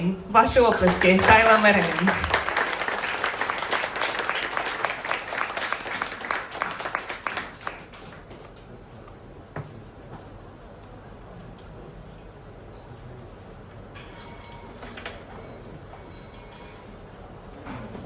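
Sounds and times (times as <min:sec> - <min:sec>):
audience clapping: 0:00.4 - 0:08.6.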